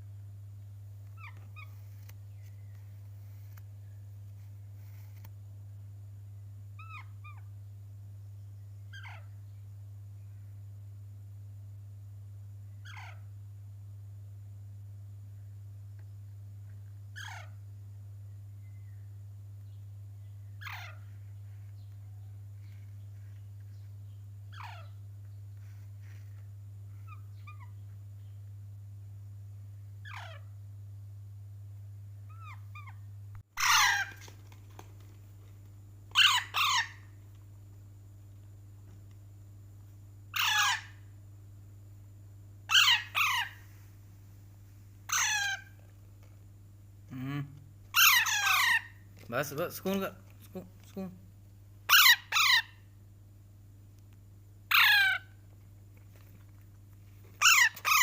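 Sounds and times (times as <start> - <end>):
parrot squawking: 1.2 - 1.8, 6.8 - 7.5, 8.9 - 9.3, 12.8 - 13.2, 17.2 - 17.6, 20.6 - 21.1, 24.5 - 25.0, 27.0 - 27.8, 30.0 - 30.5, 32.3 - 33.0, 33.6 - 34.3, 36.1 - 37.2, 40.3 - 41.0, 42.7 - 43.7, 45.1 - 45.9, 47.9 - 49.0, 51.9 - 52.8, 54.7 - 55.4, 57.4 - 58.0
parrot chirping: 1.2 - 2.7, 6.8 - 7.5, 8.9 - 9.3, 12.8 - 13.2, 17.2 - 17.6, 20.6 - 23.8, 24.5 - 25.0, 27.0 - 28.3, 30.0 - 30.5, 32.3 - 33.0, 33.6 - 34.8, 36.1 - 37.2, 40.3 - 41.0, 42.7 - 43.7, 45.1 - 45.9, 47.9 - 49.0, 51.9 - 52.9, 54.7 - 55.4, 57.4 - 58.0.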